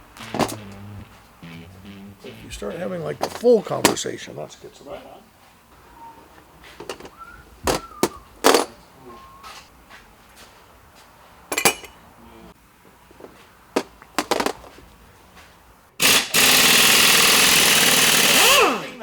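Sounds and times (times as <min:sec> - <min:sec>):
impact wrench hammering: 0:03.2 - 0:04.0.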